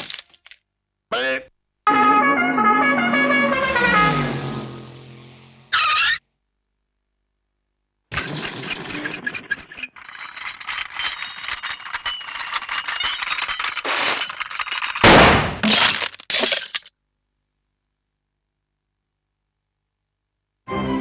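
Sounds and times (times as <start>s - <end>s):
cartoon crashes: 1.9s - 6.2s, 8.1s - 10.0s, 13.9s - 16.5s
cartoon clinks and knocks: 8.1s - 16.9s.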